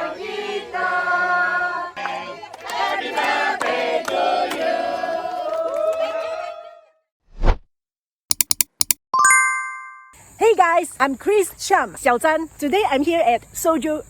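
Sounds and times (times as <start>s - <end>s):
crowd chanting in unison: 0.0s - 5.6s.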